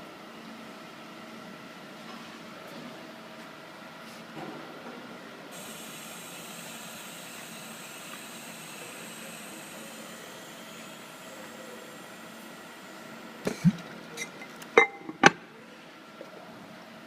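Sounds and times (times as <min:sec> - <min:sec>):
faint machine hum: 0:00.0 - 0:17.0
hiss of air: 0:05.6 - 0:12.4.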